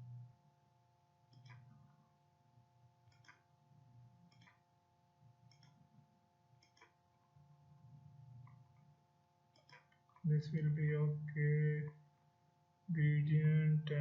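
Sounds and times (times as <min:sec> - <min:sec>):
faint electrical hum: 0:00.0 - 0:14.0
soft clicks: 0:01.3 - 0:01.9, 0:03.1 - 0:03.5, 0:04.3 - 0:04.6, 0:05.4 - 0:06.0, 0:06.6 - 0:07.0, 0:09.5 - 0:10.2.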